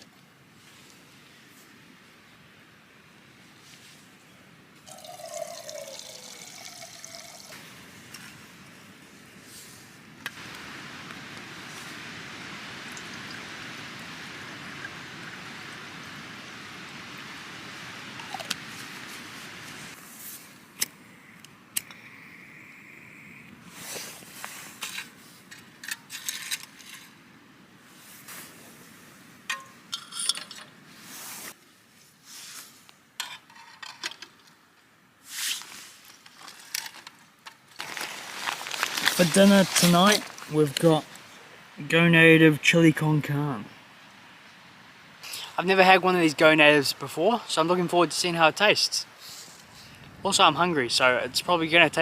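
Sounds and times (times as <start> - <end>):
steady rushing noise: 45.6 - 52.0.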